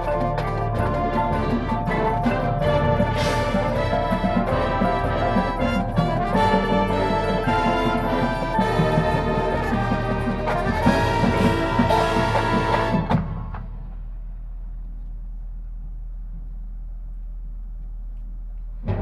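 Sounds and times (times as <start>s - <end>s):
marching band brass: 0.0s - 14.2s
drums: 0.0s - 15.3s, 18.3s - 19.0s.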